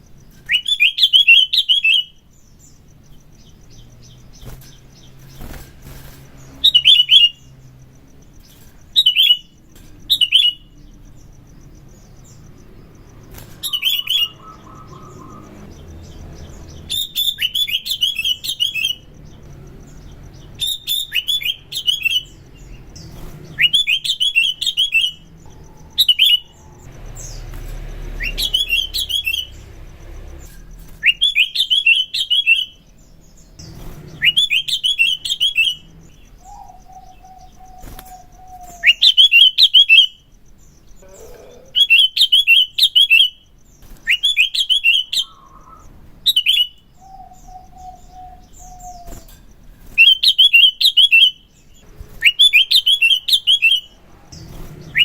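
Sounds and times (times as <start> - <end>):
bird chattering song: 0.0 - 55.0.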